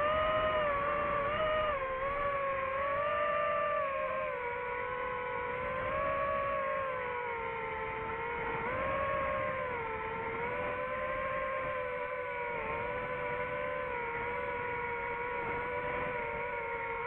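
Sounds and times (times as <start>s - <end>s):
drone propellers whining: 0.0s - 17.0s.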